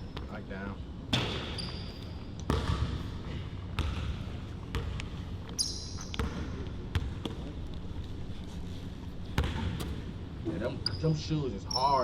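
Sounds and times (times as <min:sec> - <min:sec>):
basketball bouncing on court floor: 0:01.1 - 0:03.1, 0:03.7 - 0:07.6, 0:09.4 - 0:10.1
shoe squeak: 0:01.2 - 0:02.4, 0:05.5 - 0:06.4, 0:10.6 - 0:12.0.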